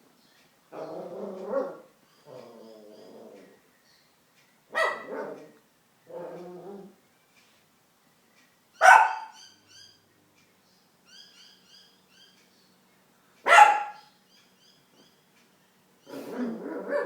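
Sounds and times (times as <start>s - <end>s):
puppy barking: 4.7s - 5.6s, 8.8s - 9.4s, 13.5s - 14.1s, 16.1s - 17.0s.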